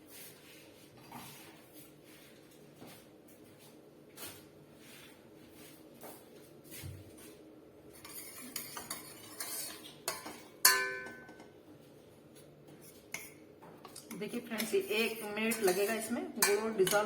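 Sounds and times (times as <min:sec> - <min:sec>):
metal spoon scraping a pot: 0:07.9 - 0:11.0, 0:13.9 - 0:17.0
spoon clanking on pot: 0:08.0 - 0:11.5, 0:15.5 - 0:17.0.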